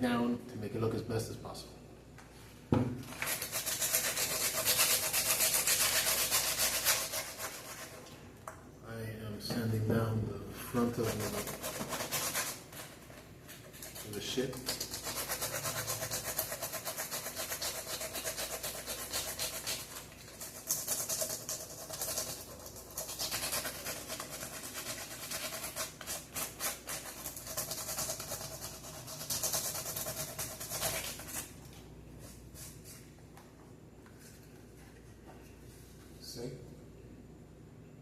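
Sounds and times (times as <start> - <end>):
sandpaper rubbing: 3.1 - 8.0, 10.7 - 31.6.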